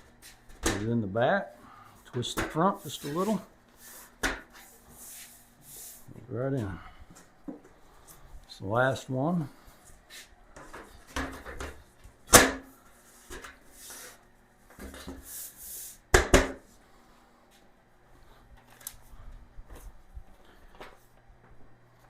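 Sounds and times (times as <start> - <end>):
board sliding and rubbing: 2.8 - 6.1.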